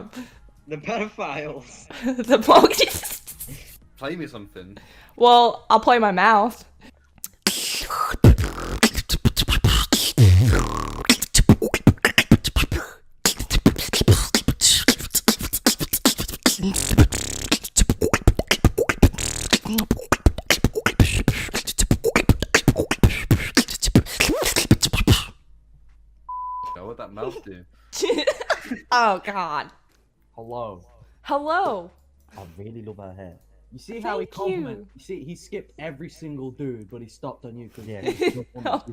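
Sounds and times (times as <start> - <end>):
person beatboxing: 7.2 - 25.4.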